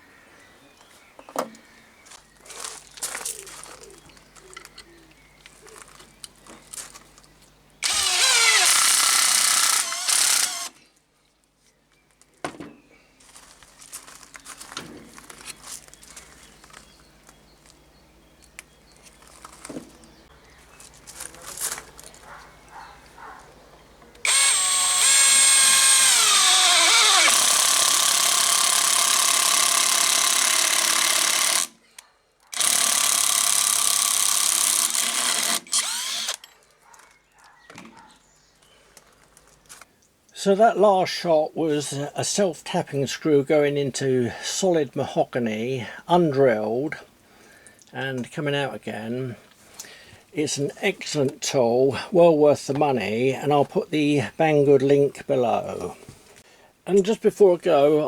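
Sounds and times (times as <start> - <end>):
impact wrench running: 7.8 - 10.8, 24.2 - 31.8, 32.5 - 36.4
light knocks and handling: 12.0 - 17.8, 18.4 - 24.2.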